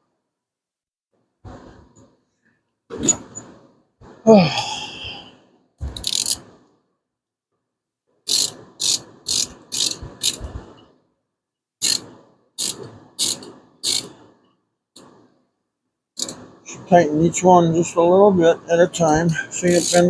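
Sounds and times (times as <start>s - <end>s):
ratchet wrench clicking: 5.9s - 6.5s, 8.3s - 10.5s, 11.8s - 14.1s, 16.2s - 16.4s, 19.6s - 20.0s.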